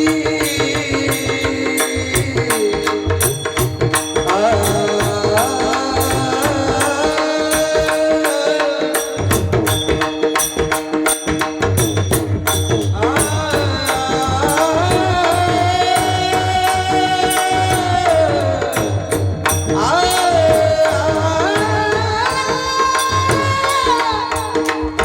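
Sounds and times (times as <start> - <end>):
hand drum beat: 0.0 - 25.0
person singing long notes: 13.0 - 25.0.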